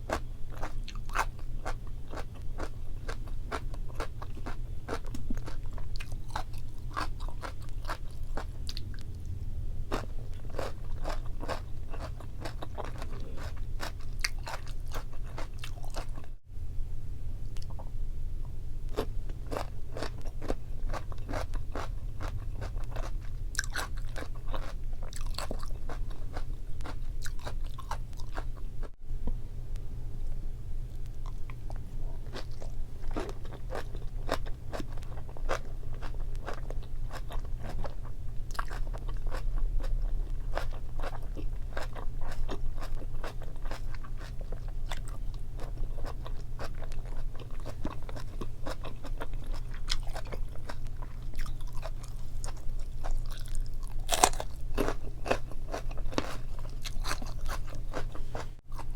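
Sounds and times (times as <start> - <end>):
chewing and crunching food: 0.0 - 16.4, 18.9 - 28.9, 30.9 - 58.9
steady low hum: 0.0 - 58.9.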